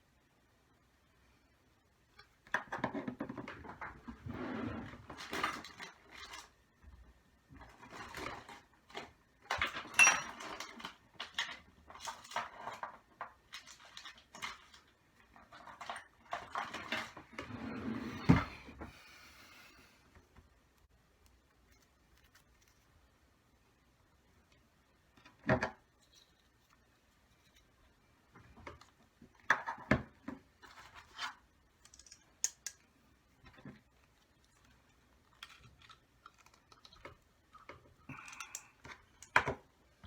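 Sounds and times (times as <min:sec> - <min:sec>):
metal parts clicking and rattling: 0:31.8 - 0:32.8.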